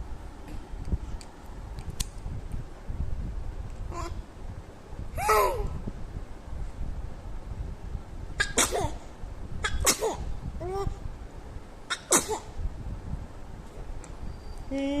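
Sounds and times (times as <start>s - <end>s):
baby squealing and cooing: 5.2s - 5.7s.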